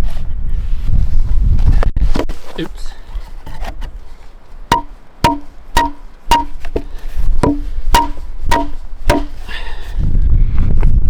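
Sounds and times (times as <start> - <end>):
axe striking wood: 4.7 - 9.5.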